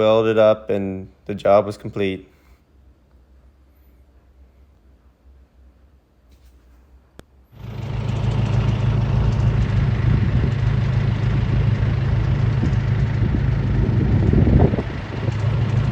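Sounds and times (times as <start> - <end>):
engine humming steadily: 7.5 - 15.9.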